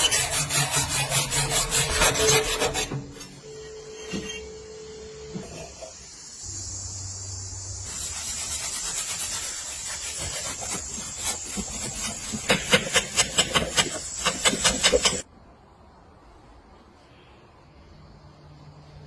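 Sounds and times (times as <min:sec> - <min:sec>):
tool scraping back and forth: 0:00.0 - 0:06.1, 0:07.8 - 0:15.3.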